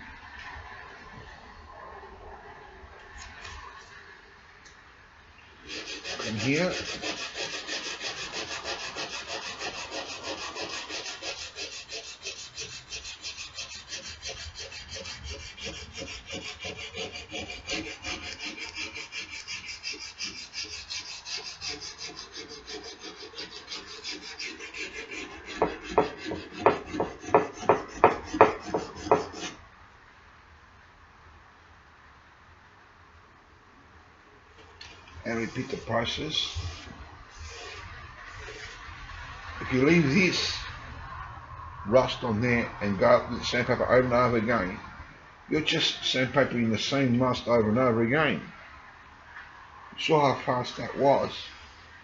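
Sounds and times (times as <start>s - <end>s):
sandpaper rasping on steel: 5.6s - 29.6s, 35.3s - 38.8s.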